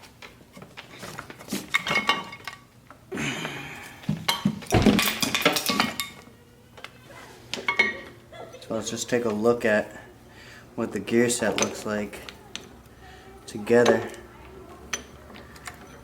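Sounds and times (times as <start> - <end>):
metal parts clinking: 4.3 - 6.9, 11.4 - 12.6.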